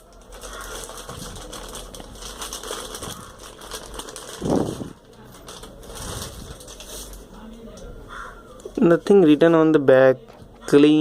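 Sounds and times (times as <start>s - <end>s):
plastic packaging crinkling: 0.0s - 7.5s.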